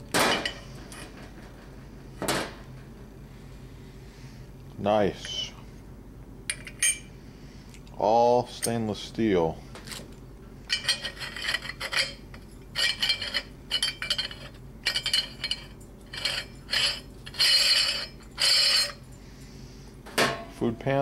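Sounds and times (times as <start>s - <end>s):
metal parts clinking and scraping: 10.7s - 19.0s
long ringing metal scrapes: 10.7s - 19.7s.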